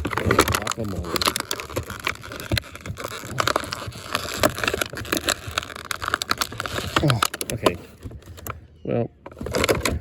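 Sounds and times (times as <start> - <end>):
scissors cutting plastic: 0.0 - 7.8
plastic packaging crinkling: 0.0 - 8.6, 9.3 - 10.0.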